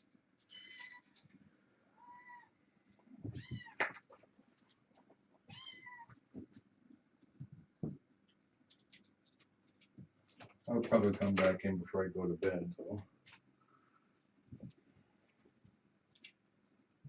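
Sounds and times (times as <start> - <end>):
kittens meowing: 3.2 - 3.9, 5.5 - 6.2.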